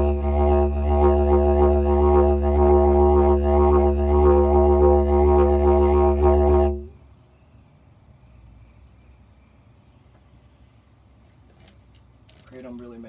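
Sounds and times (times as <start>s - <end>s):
didgeridoo drone: 0.0s - 6.9s.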